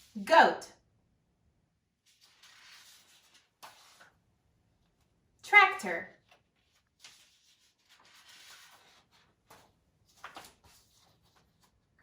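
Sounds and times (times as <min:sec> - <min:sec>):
soft rustle: 0:02.0 - 0:04.2, 0:06.2 - 0:12.0.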